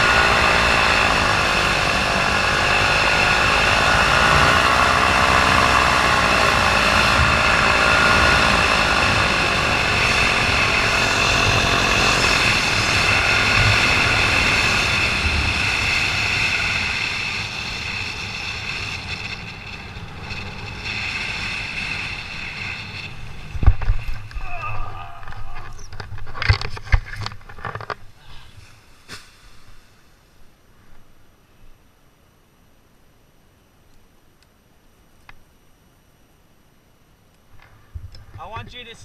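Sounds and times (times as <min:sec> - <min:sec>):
paramotor engine and propeller: 0:00.0 - 0:28.6.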